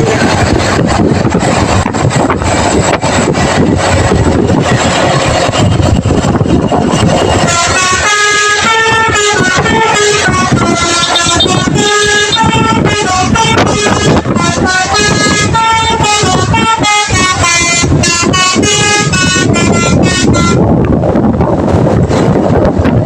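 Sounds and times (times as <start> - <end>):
vehicle rumble: 0.0 - 23.0
multi-tone bus horn tune: 6.9 - 20.8.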